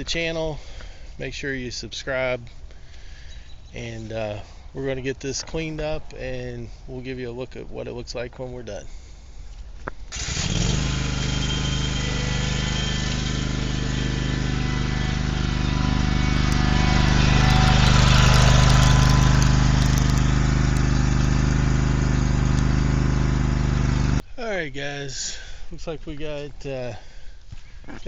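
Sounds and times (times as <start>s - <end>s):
engine running steadily: 10.1s - 24.2s.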